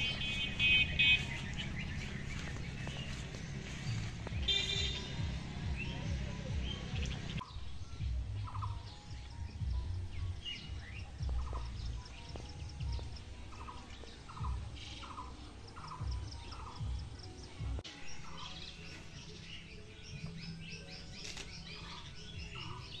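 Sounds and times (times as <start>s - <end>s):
low rumbles: 0.0s - 13.5s
birds chirping: 0.0s - 23.0s.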